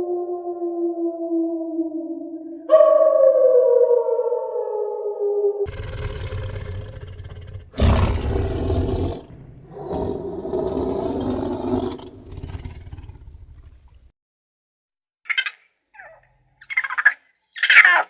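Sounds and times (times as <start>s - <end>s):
large animal bellowing: 5.7s - 14.1s.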